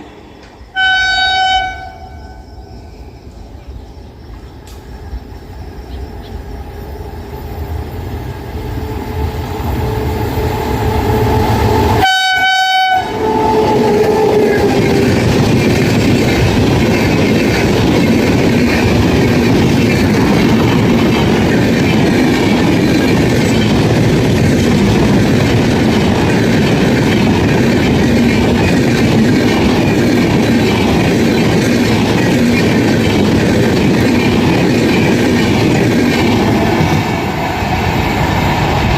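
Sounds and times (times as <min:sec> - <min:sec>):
train passing with wheel clatter: 0:00.0 - 0:38.9
locomotive horn: 0:00.7 - 0:02.5, 0:10.9 - 0:15.2.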